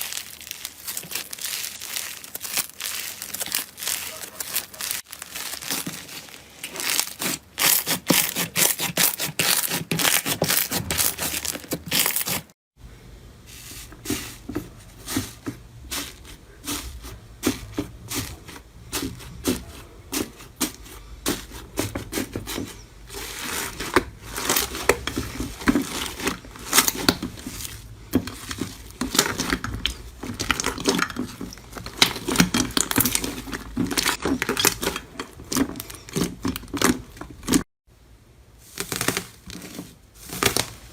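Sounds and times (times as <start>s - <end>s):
slime crackling and popping: 0.0s - 12.4s, 23.1s - 37.6s, 38.6s - 40.9s.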